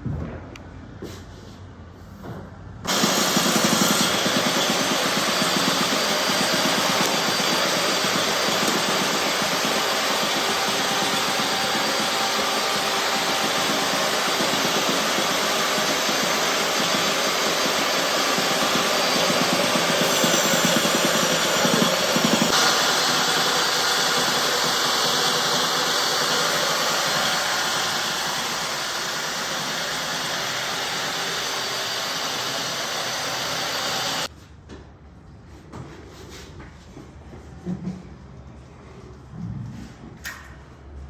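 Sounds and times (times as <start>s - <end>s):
electric power tool running: 2.9s - 34.3s.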